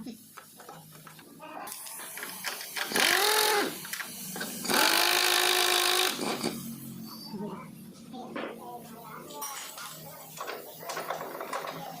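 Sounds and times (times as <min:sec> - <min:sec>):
power tool motor spinning: 0:01.7 - 0:06.7.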